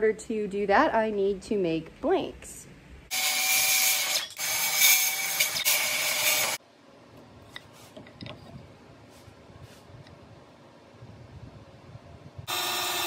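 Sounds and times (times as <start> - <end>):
power tool running loudly: 12.5 - 13.0.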